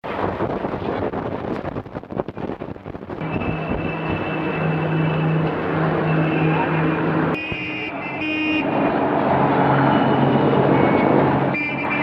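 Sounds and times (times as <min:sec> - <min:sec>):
traffic hum: 0:00.0 - 0:12.0
horn-like tone: 0:03.2 - 0:08.8, 0:09.9 - 0:12.0.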